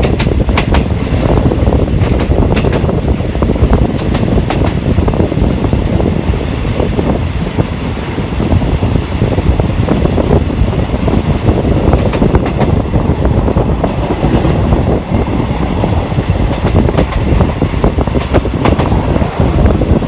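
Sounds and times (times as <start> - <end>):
train clicks and clatters: 0.0 - 20.0
train wheels rumbling on rails: 0.0 - 20.0.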